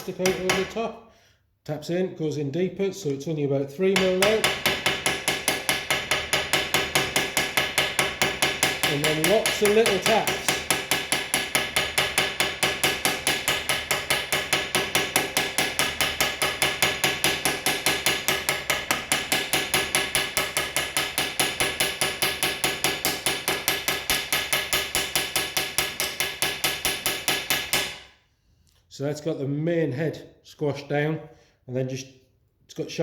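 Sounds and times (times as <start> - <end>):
hammer tapping metal rod: 0.0 - 0.8, 4.0 - 28.0.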